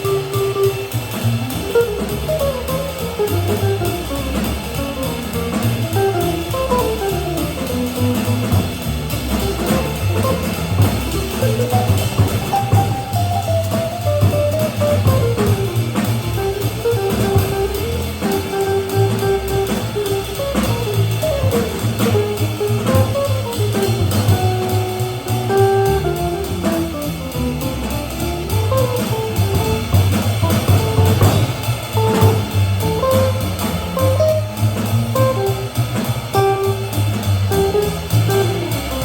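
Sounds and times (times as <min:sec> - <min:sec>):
guitar improvised line: 0:00.0 - 0:08.6, 0:09.2 - 0:31.3
drum kit on cymbals: 0:00.0 - 0:39.0
walking upright bass: 0:00.0 - 0:39.0.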